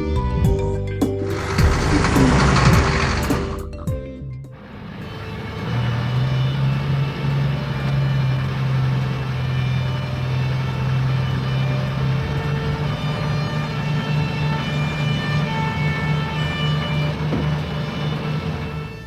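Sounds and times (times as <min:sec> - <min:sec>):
heavy engine humming: 0:01.1 - 0:19.0.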